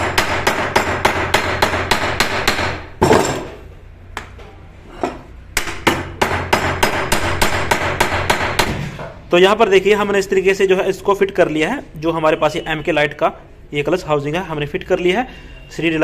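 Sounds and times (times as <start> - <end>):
hammer striking metal rivets: 0.0 - 3.6.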